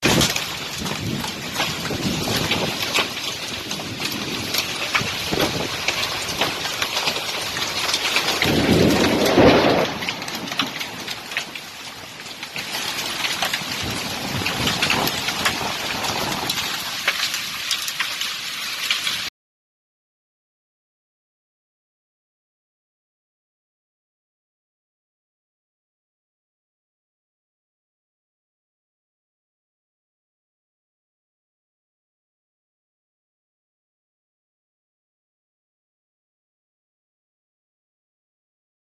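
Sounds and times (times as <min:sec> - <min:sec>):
hail and rain pelting down: 0:00.0 - 0:19.3.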